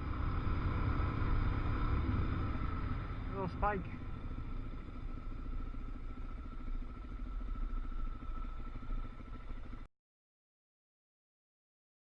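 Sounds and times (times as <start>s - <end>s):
vehicle engine running: 0.0s - 9.9s.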